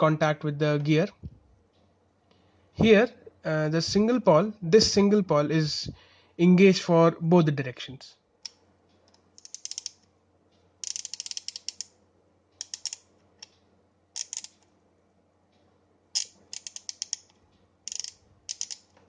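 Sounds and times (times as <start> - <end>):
ratchet wrench clicking: 9.4 - 10.0, 10.8 - 11.9, 12.6 - 13.0, 14.2 - 14.6, 16.2 - 18.9.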